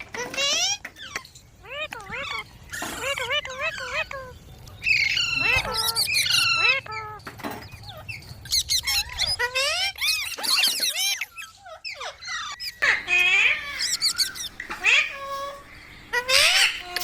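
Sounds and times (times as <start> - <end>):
parakeet chattering: 0.0 - 17.0.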